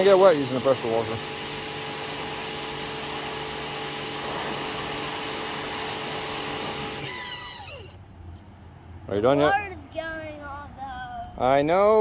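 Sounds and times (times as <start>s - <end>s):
water spray hiss: 0.0s - 7.0s
pressure washer motor whine: 0.0s - 8.0s.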